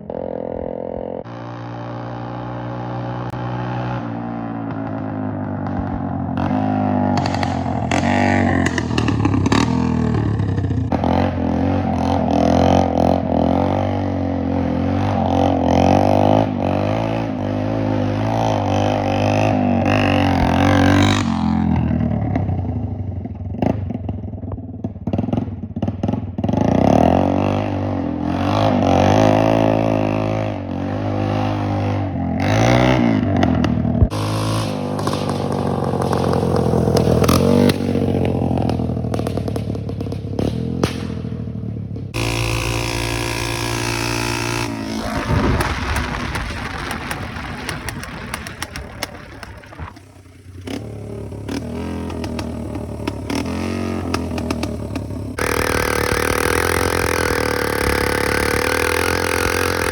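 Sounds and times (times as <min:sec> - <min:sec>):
motorbike engine revving: 0:00.0 - 0:59.9.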